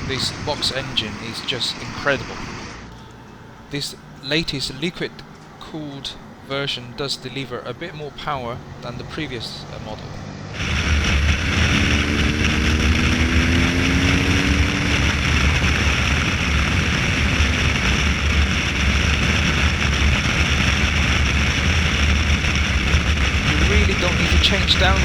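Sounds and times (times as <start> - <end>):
motorcycle engine accelerating: 9.5 - 20.4, 22.6 - 25.0.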